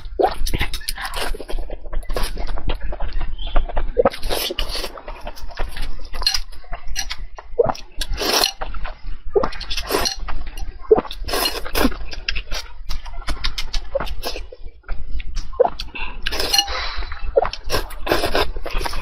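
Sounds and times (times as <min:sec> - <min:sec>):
chewing and smacking: 0:00.0 - 0:19.0
utensils clinking on dish: 0:06.2 - 0:07.2, 0:09.6 - 0:10.7, 0:16.3 - 0:16.9.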